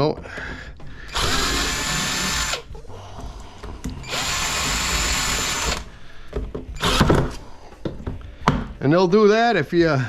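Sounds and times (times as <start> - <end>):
power drill running: 1.1 - 2.7, 4.0 - 5.9, 6.8 - 7.3.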